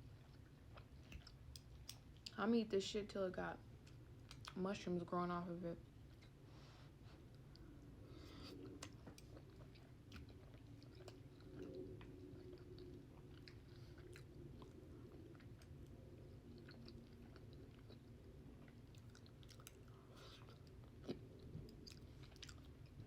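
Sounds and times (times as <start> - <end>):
low steady hum: 0.0 - 23.0
person chewing food: 0.1 - 2.3, 7.1 - 23.0.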